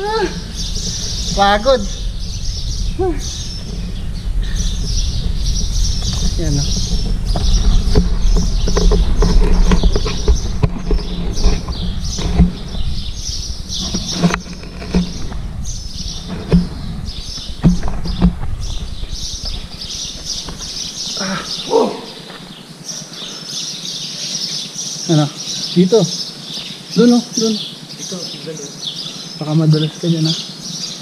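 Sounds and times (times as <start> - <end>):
footsteps and hands on rock: 5.3 - 22.6.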